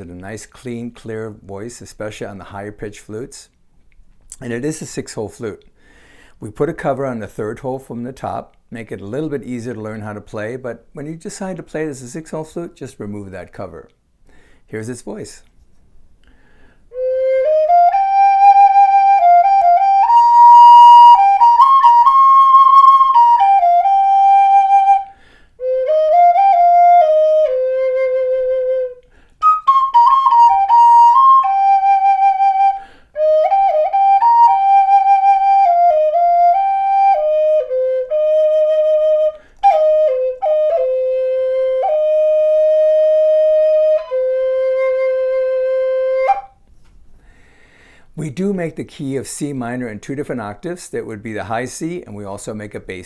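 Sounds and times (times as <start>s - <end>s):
wooden flute melody: 16.9s - 46.8s.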